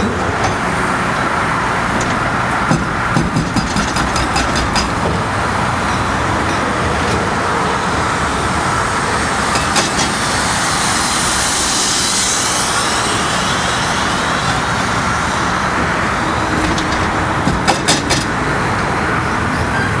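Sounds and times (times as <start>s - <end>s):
heavy machinery rumble: 0.0s - 20.0s
hydraulic breaker blows: 0.0s - 20.0s
road traffic: 0.0s - 20.0s
hiss: 9.4s - 15.5s.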